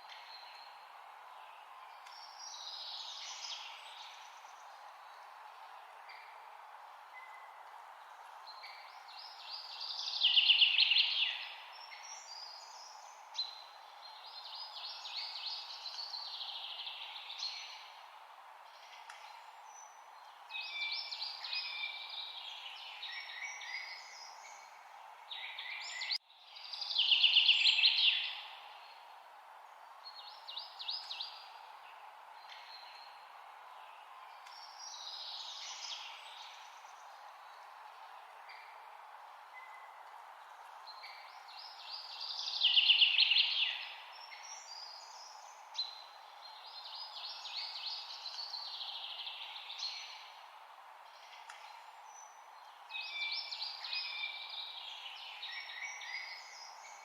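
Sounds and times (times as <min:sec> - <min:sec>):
forest ambience hiss: 0:00.0 - 0:57.0
songbird singing trills: 0:40.8 - 0:50.4, 0:51.0 - 0:57.0.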